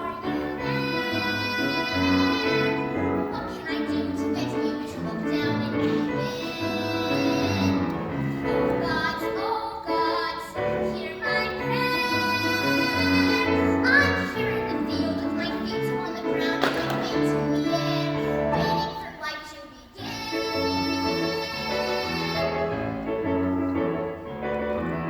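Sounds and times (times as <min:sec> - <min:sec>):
young female voice singing: 0:00.0 - 0:07.9, 0:08.5 - 0:22.7.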